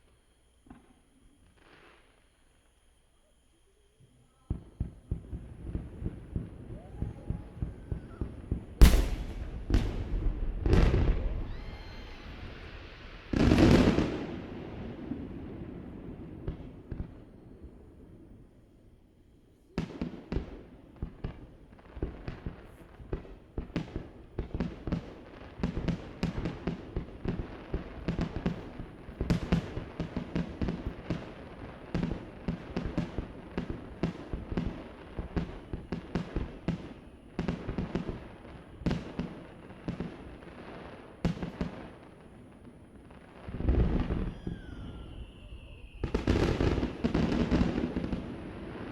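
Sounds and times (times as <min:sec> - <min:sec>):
firecrackers crackling: 0:05.3 - 0:16.0, 0:41.0 - 0:48.9
firework shell bursts rumbling: 0:08.8 - 0:14.2.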